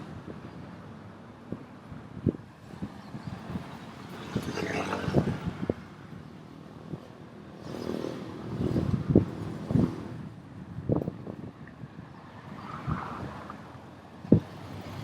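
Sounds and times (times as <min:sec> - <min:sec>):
wind buffeting microphone: 0:00.0 - 0:15.0
vehicle passing: 0:04.2 - 0:05.8.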